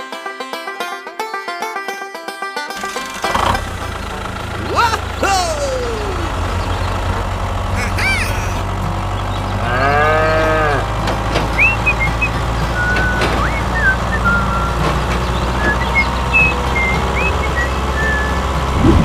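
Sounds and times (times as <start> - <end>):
cow mooing: 9.6 - 11.0.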